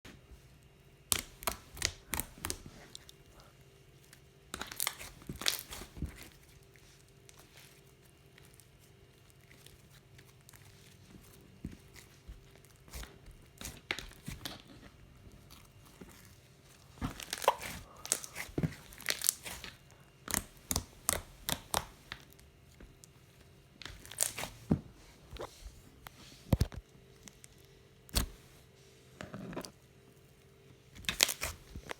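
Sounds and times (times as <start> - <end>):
slime squishing: 1.1 - 23.2, 23.8 - 24.7, 30.8 - 31.9.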